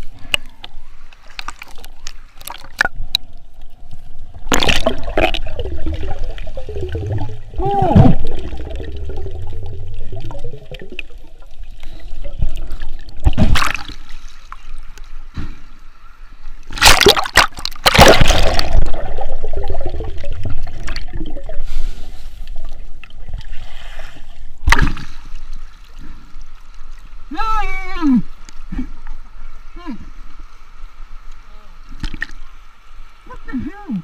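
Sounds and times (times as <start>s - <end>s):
sea water sloshing and splashing: 1.1s - 15.8s, 16.6s - 27.3s.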